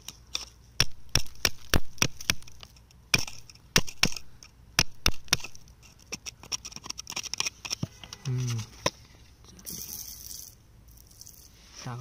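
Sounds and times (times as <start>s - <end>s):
hand tool chipping rock: 0.0s - 7.9s.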